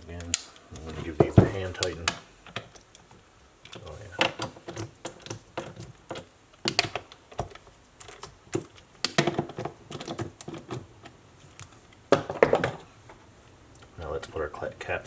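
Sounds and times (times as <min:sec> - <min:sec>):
knocks on plastic housing: 0:12.1 - 0:12.8.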